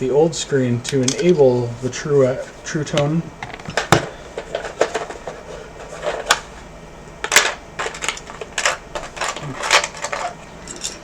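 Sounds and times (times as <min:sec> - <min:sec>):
small hard parts clattering: 0:07.2 - 0:11.0.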